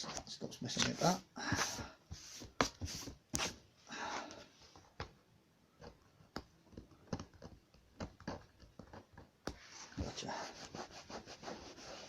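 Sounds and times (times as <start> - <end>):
small clicks and taps: 5.8 - 9.6.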